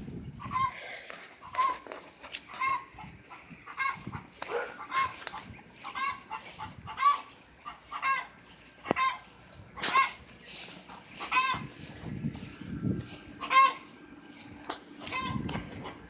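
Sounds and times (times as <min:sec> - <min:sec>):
hens clucking: 0:00.1 - 0:16.0
loud pitched hen call: 0:00.4 - 0:10.3, 0:11.1 - 0:16.0.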